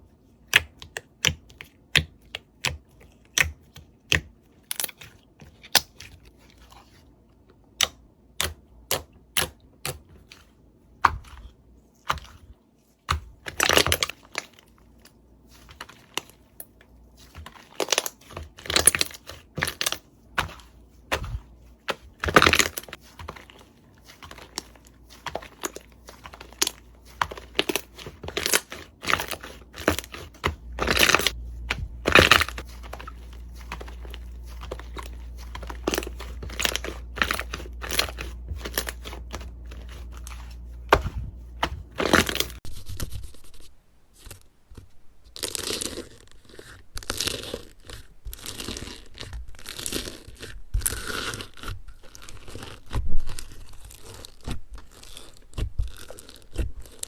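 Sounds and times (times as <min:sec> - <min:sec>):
hands squeezing crunchy slime: 0:11.0 - 0:42.6.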